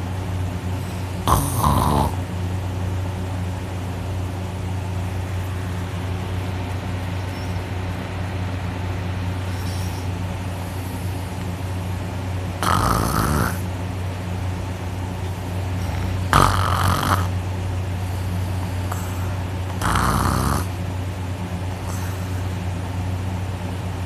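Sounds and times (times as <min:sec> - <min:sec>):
steady low hum: 0:00.0 - 0:24.0
person snoring loudly: 0:00.8 - 0:02.2, 0:12.6 - 0:13.7, 0:15.7 - 0:17.4, 0:18.9 - 0:20.8.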